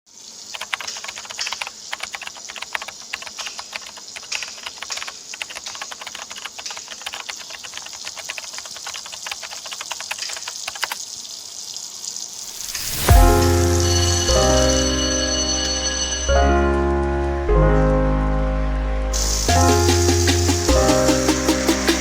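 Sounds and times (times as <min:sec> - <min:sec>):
running water hiss: 0:00.1 - 0:15.0, 0:19.2 - 0:22.0
water splashing patter: 0:00.5 - 0:11.2.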